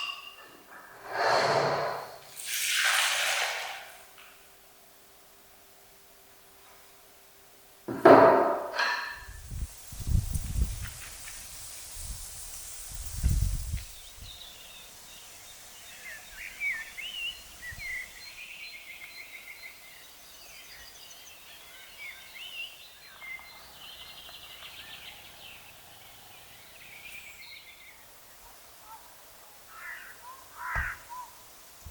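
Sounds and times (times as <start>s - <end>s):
faint background hiss: 0.0s - 31.9s
songbirds chirping and trilling: 8.9s - 31.8s.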